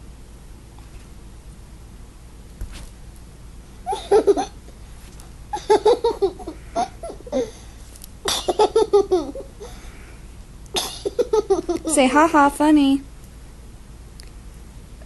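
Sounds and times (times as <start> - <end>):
toddler giggling: 3.8 - 4.6, 5.5 - 7.6, 8.3 - 9.7, 10.8 - 12.0.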